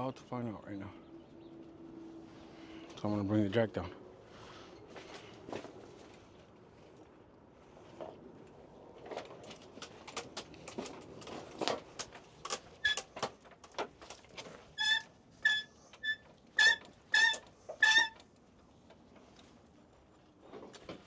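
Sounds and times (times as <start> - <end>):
short high squeaks: 12.8 - 13.1, 14.8 - 18.2.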